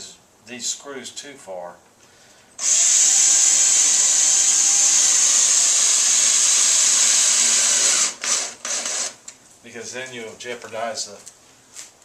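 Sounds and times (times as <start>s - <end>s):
power drill driving screw: 2.6s - 9.3s.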